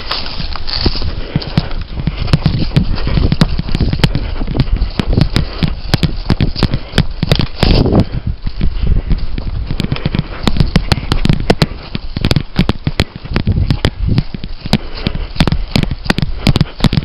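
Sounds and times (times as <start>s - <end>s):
footsteps crunching through dry leaves: 0.0s - 8.6s.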